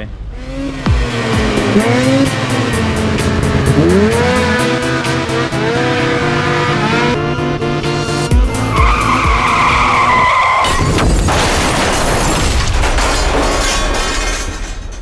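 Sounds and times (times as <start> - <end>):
background music: 0.9 - 11.0
high whine: 0.9 - 11.2.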